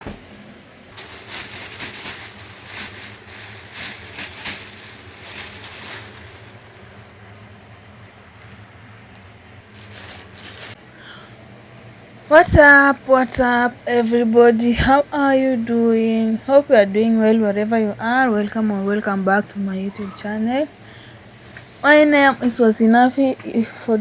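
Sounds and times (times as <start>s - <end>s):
steady low hum: 0.0s - 24.0s
rustling and scraping handling: 0.9s - 10.8s.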